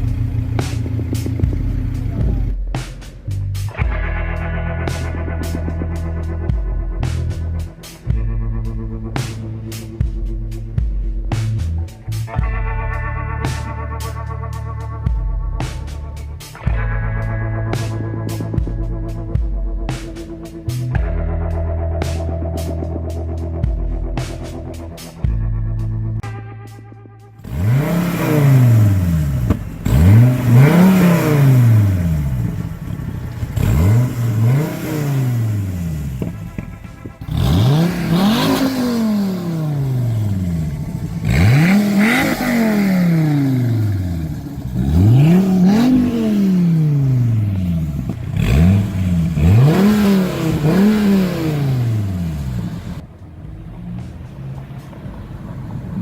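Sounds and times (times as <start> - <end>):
car engine revving: 0.0 - 2.6, 27.4 - 56.0.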